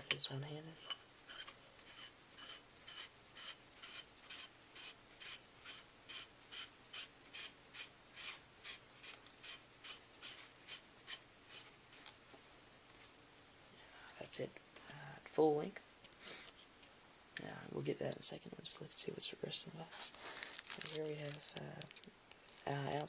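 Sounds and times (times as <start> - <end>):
metal threads rasping: 0.0 - 11.7.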